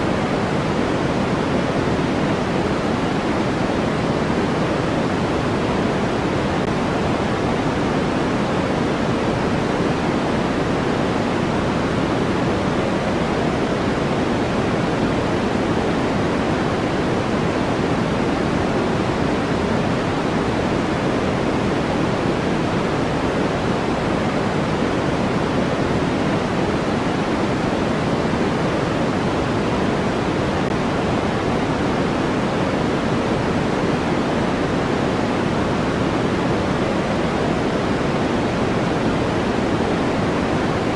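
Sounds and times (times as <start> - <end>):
steady pink noise hiss: 0.0 - 40.9.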